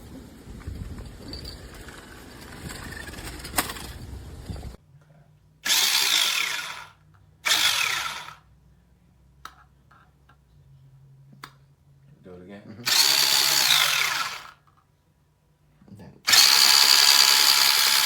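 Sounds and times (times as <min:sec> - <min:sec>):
rough rumbling noise: 0:00.0 - 0:04.8
small electric motor whirring: 0:05.6 - 0:08.4, 0:12.9 - 0:14.6, 0:16.3 - 0:18.0.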